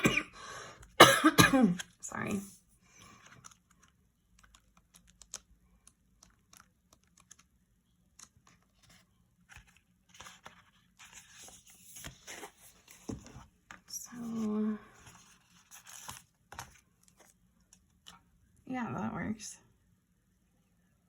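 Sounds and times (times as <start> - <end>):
paper sticker sheets rustling: 8.1 - 18.2.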